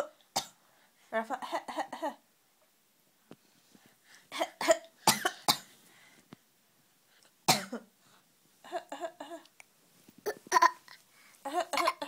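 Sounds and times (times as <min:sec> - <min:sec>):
person coughing: 0:07.5 - 0:07.9, 0:11.6 - 0:12.0.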